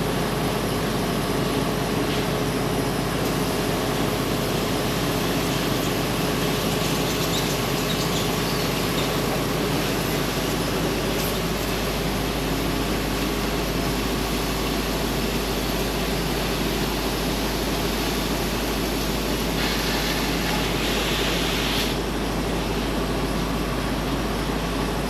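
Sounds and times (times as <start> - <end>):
low machine hum: 0.0 - 25.0
laser cutter hissing: 3.2 - 22.1.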